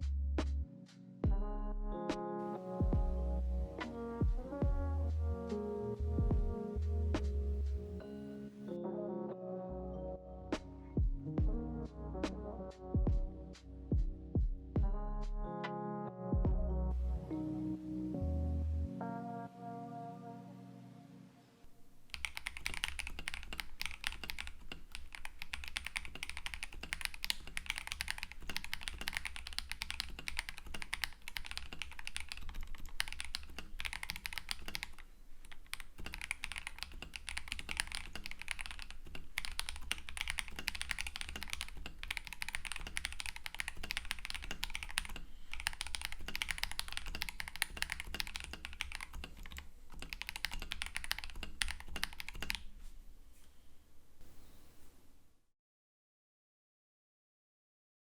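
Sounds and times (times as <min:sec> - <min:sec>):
mechanical keyboard typing: 0:22.1 - 0:52.7.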